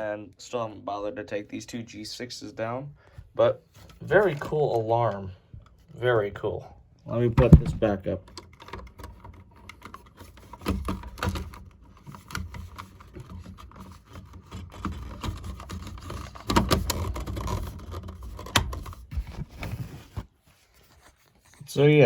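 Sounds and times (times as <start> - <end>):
plastic clicks and knocks: 7.4 - 19.3.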